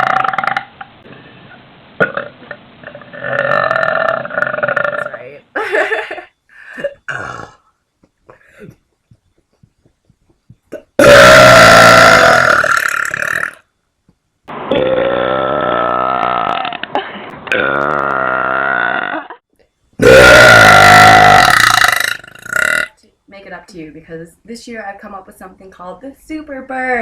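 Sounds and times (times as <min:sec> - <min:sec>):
woman burping loudly: 0:00.0 - 0:00.8, 0:02.0 - 0:07.7, 0:10.7 - 0:13.6, 0:14.7 - 0:19.4, 0:20.0 - 0:23.0.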